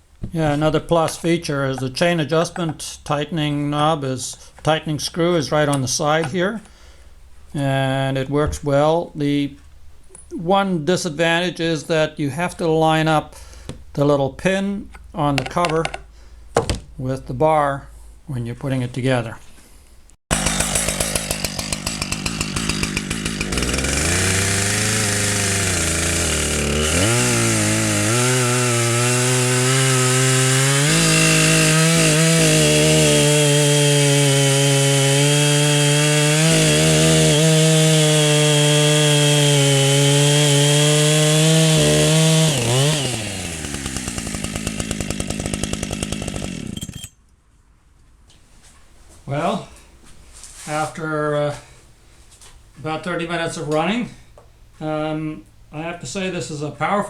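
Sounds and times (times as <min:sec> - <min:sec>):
chainsaw engine running: 0:20.3 - 0:47.1.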